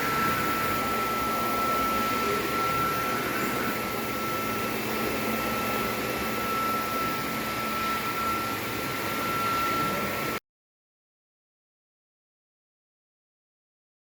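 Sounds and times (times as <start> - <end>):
cleaning machine whining and whirring: 0.0 - 10.4.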